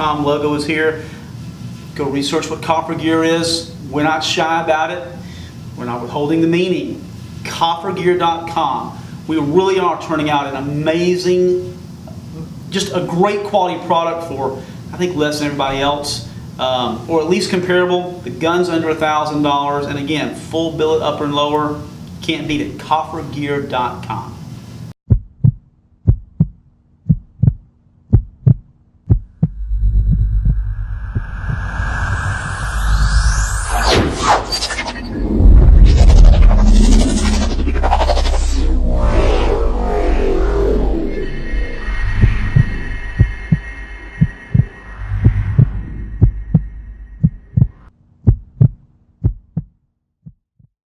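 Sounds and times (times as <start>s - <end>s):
low rumble: 15.6s - 16.6s, 28.1s - 48.7s
heartbeat thumps: 25.1s - 32.0s, 42.1s - 50.7s
steady drone: 29.4s - 47.9s.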